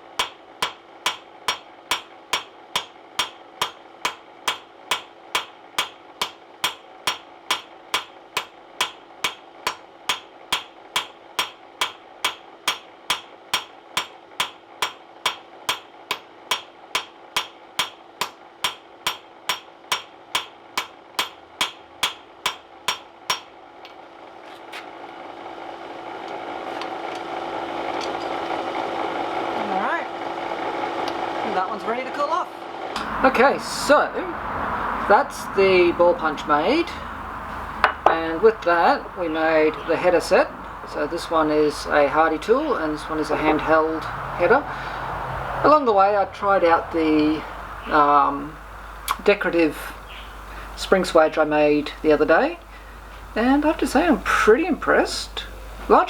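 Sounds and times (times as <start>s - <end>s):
hammer striking steel on anvil: 0.0s - 23.6s
steady hum: 0.0s - 56.0s.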